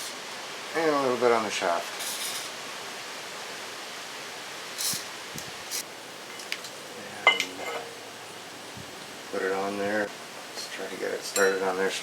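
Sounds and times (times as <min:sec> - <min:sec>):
steady hiss: 0:00.0 - 0:12.0
metal parts scraping and clicking: 0:02.0 - 0:02.5.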